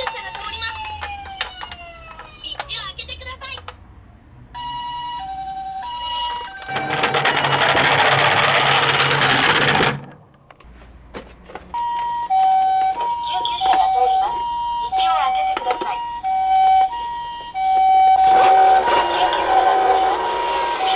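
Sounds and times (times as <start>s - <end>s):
ambulance two-tone siren: 0.0s - 2.6s, 4.6s - 8.5s, 11.8s - 20.9s
toy car rattling down slope: 6.6s - 10.2s, 18.2s - 20.9s.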